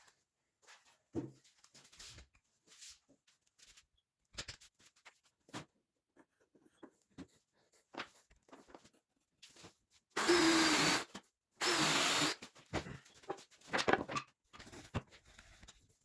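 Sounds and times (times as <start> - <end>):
power tool bursts: 10.2 - 12.4.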